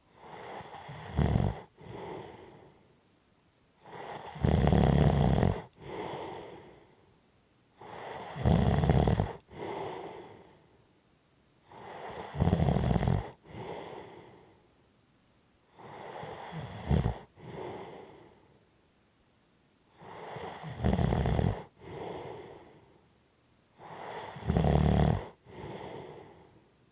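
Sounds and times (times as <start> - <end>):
person snoring heavily: 0.1 - 2.7, 3.8 - 6.8, 7.8 - 10.5, 11.7 - 14.4, 15.8 - 18.3, 20.0 - 22.8, 23.8 - 26.5.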